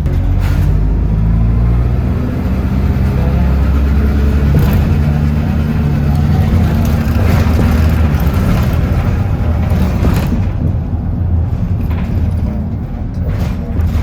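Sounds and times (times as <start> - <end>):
bus engine hum: 0.0 - 14.0
road noise rushing: 0.0 - 14.0.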